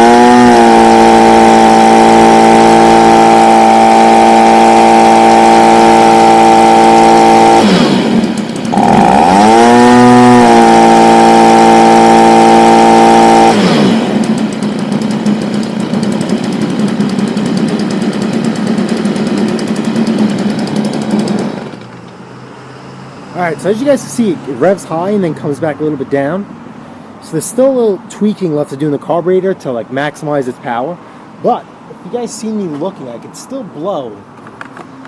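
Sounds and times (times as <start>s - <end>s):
leaf blower engine revving: 0.0s - 25.2s.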